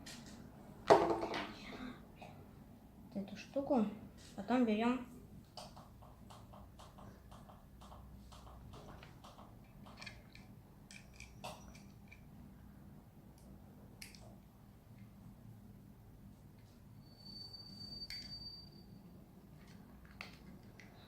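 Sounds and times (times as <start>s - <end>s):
plastic pieces clicking together: 8.3s - 12.2s.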